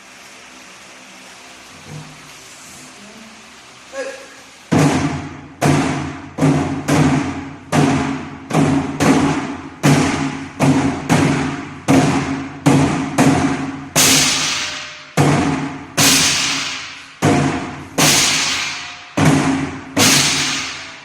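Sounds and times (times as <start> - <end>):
drum strokes in steady rhythm: 4.7 - 21.0.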